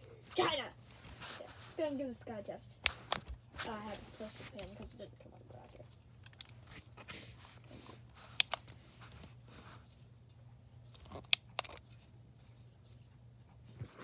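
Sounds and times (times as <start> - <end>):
faint steady hum: 0.0 - 14.0
sharp plastic clicks: 5.9 - 6.6.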